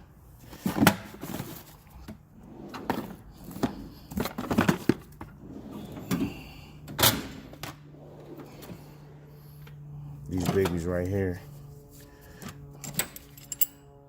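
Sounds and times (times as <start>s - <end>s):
metal tools clinking in drawer: 12.8s - 13.8s.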